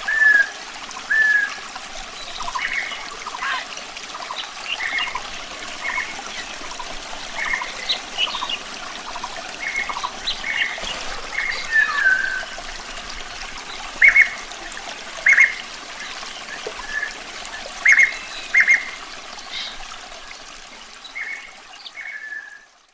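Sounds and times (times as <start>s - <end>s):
water trickling: 0.0s - 22.9s
bird chirping: 7.3s - 12.6s.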